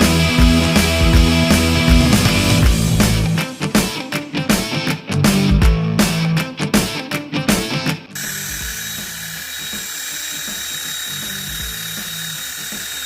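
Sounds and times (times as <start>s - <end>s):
music: 0.0s - 13.0s
toy motor whining: 8.2s - 13.0s.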